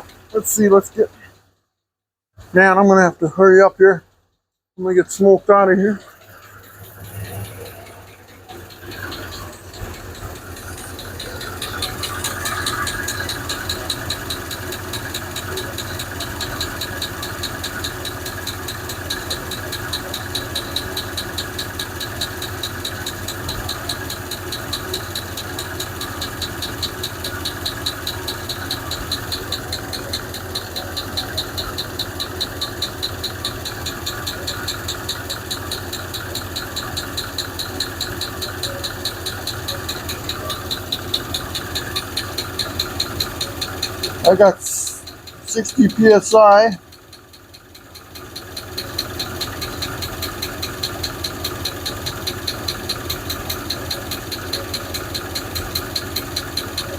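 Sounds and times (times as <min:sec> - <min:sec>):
engine idling with lifter tick: 0:00.0 - 0:01.8, 0:03.6 - 0:56.9.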